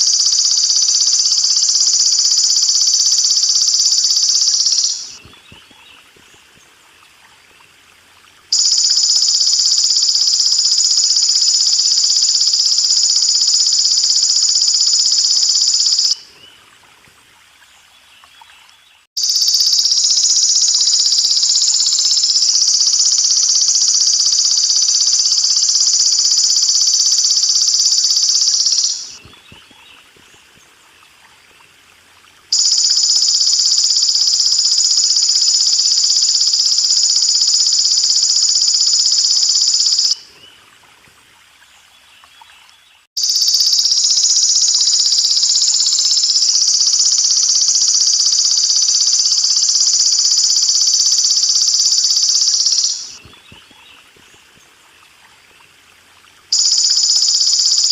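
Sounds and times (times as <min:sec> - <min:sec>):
insect buzzing trill: 0:00.0 - 0:05.2, 0:08.5 - 0:16.2, 0:19.2 - 0:29.2, 0:32.5 - 0:40.2, 0:43.2 - 0:53.4, 0:56.5 - 0:57.9
water trickling: 0:03.0 - 0:13.3, 0:16.2 - 0:19.1, 0:26.3 - 0:33.0, 0:40.2 - 0:43.1, 0:53.2 - 0:56.9.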